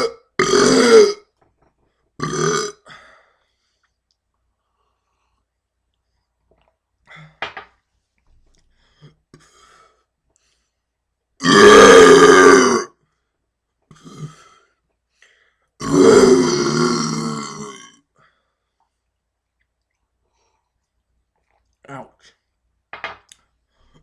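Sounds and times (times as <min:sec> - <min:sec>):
loud deep burps: 0:00.0 - 0:01.4, 0:02.2 - 0:03.0, 0:11.4 - 0:12.9, 0:13.9 - 0:14.5, 0:15.8 - 0:18.1.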